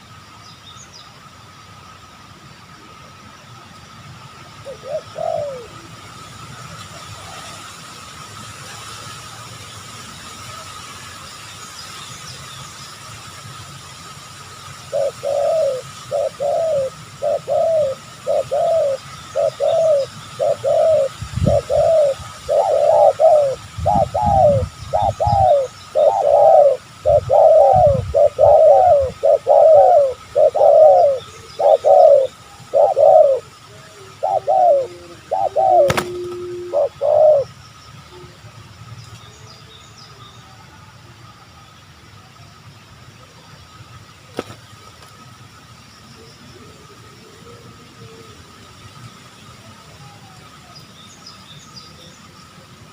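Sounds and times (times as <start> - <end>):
dove cooing: 4.6 - 5.9, 14.9 - 38.4.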